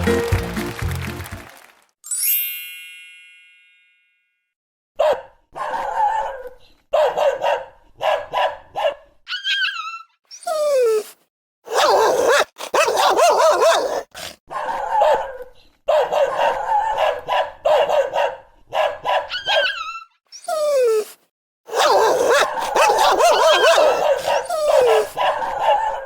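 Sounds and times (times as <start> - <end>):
dog barking: 5.0 - 9.1, 11.7 - 19.8, 21.7 - 26.0
dog whining and yelping: 9.3 - 14.4, 19.3 - 25.2.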